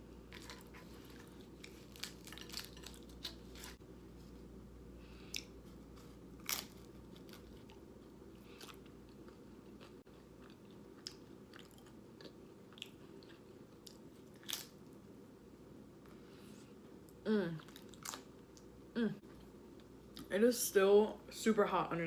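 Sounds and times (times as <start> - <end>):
chips crunching: 0.3 - 3.8, 6.4 - 7.8
person chewing: 0.3 - 3.8, 5.2 - 14.8, 17.0 - 18.7.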